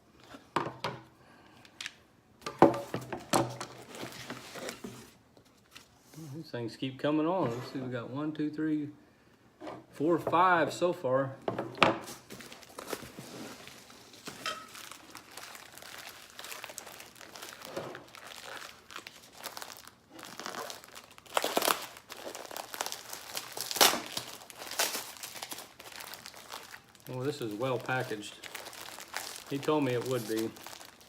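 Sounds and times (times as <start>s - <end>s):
packing material crumpling and tearing: 12.2s - 31.0s.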